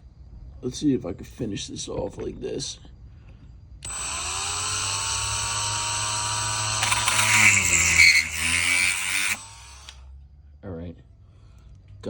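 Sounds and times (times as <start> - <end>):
electric drill grinding: 3.8 - 10.1.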